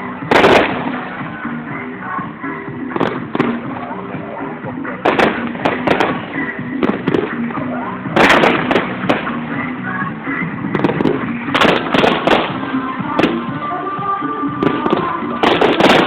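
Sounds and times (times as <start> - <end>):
fireworks bangs and crackling: 0.0 - 16.0
music with held notes: 0.0 - 16.0.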